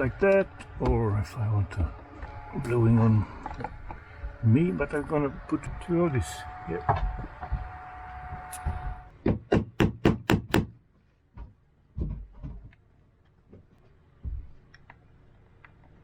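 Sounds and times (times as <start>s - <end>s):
steady hum: 0.0s - 9.1s.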